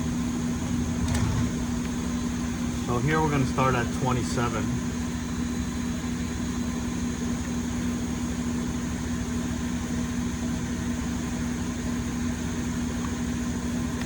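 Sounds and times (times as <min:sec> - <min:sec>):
milling machine humming: 0:00.0 - 0:07.1.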